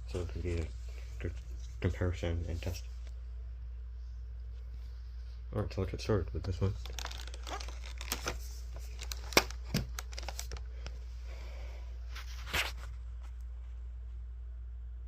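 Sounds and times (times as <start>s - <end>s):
steady low hum: 0.0s - 15.0s
crinkling rustling: 6.3s - 11.1s.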